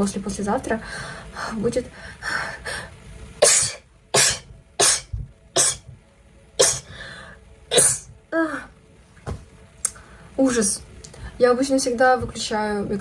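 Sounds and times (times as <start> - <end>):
person sneezing: 3.4 - 5.9.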